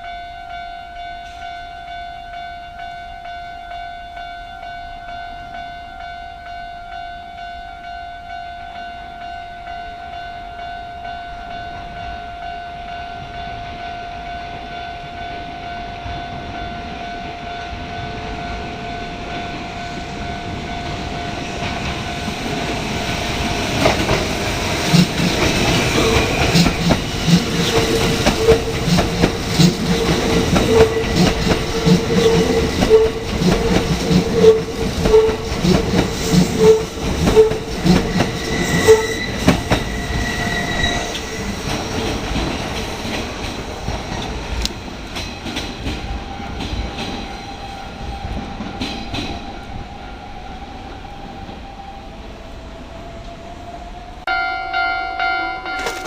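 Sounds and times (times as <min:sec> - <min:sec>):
electric train passing: 0:00.0 - 0:55.8
steady crossing tone: 0:00.0 - 0:56.0
train wheels clattering on rail joints: 0:20.6 - 0:49.7.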